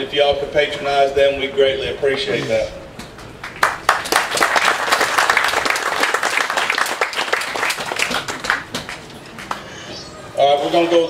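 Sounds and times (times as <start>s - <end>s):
crowd applauding: 3.0s - 9.7s.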